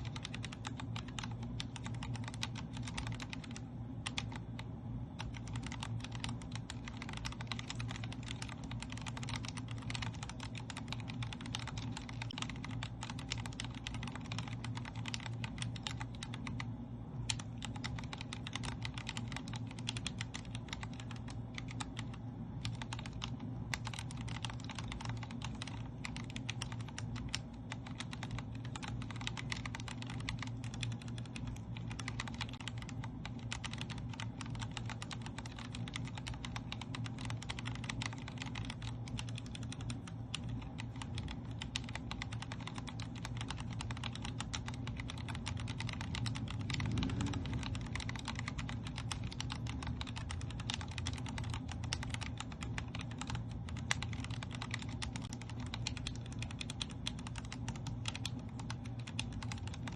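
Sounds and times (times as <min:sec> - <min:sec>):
mechanical keyboard typing: 0:00.0 - 0:59.9
steady low hum: 0:00.0 - 0:59.9.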